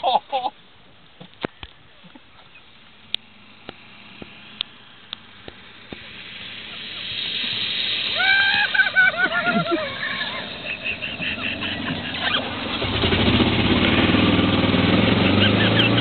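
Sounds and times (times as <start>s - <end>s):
person yelling: 8.2s - 8.8s
golf cart motor running: 9.3s - 16.0s.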